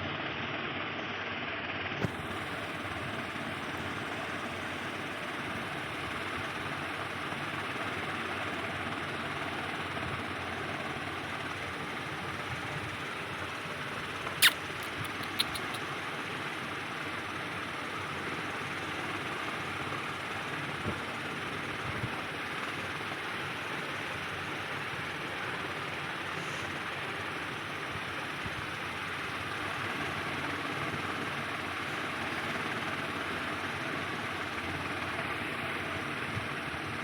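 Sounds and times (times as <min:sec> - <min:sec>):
sharp clicks: 0:14.2 - 0:15.9.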